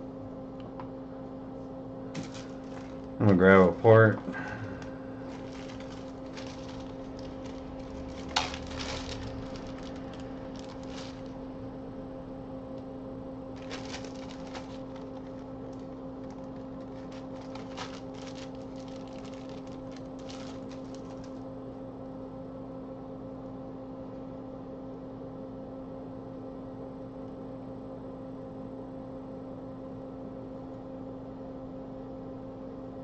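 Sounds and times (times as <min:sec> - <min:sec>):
steady electrical hum: 0:00.0 - 0:33.0
small parts clicking and rustling: 0:02.2 - 0:03.1, 0:05.3 - 0:11.3, 0:13.6 - 0:21.4.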